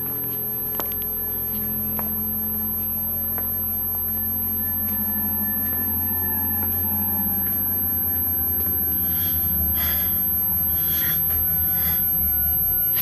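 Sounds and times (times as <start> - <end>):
low droning hum: 0.0 - 13.0.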